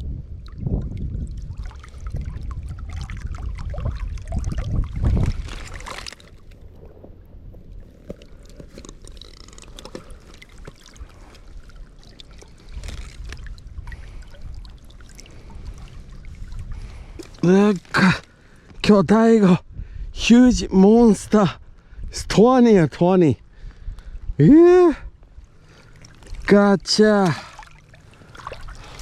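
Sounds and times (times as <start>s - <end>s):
wind buffeting microphone: 0.0s - 8.6s, 12.6s - 17.5s, 19.6s - 22.4s
water splashing and trickling: 0.0s - 19.0s, 25.3s - 29.0s.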